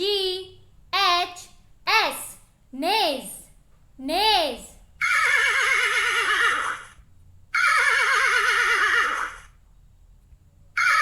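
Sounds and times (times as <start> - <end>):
horse neighing: 5.0 - 9.5, 10.8 - 11.0.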